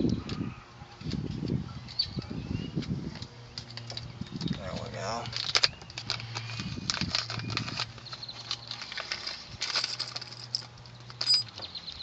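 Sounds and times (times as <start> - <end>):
metal hardware clicking and rattling: 3.6 - 12.0.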